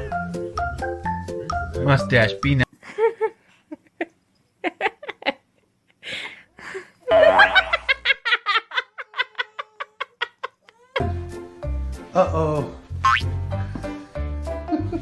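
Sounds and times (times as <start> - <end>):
young child giggling: 7.1 - 11.1.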